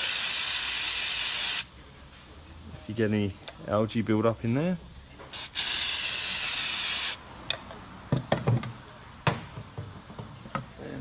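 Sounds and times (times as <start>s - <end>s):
aerosol spray hiss: 0.0s - 1.7s, 5.4s - 7.2s
handling knocks and clicks: 7.5s - 10.8s.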